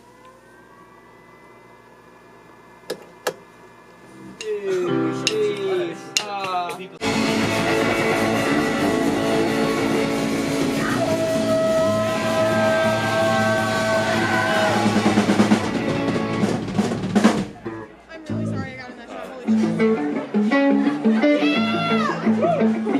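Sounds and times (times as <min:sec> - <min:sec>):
rock band with drums and guitar: 0:04.4 - 0:18.8, 0:19.4 - 0:22.9.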